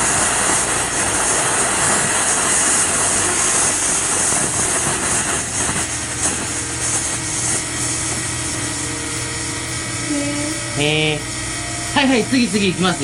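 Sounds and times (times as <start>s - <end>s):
firework fountain hissing: 0.0s - 13.0s.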